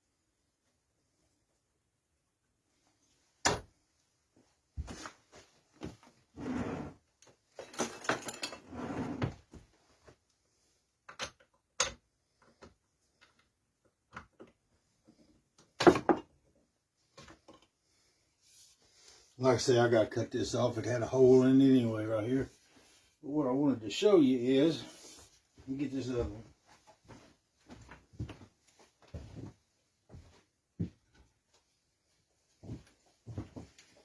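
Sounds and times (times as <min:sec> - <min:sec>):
objects clattering on workbench: 0:07.5 - 0:09.3, 0:15.7 - 0:16.4.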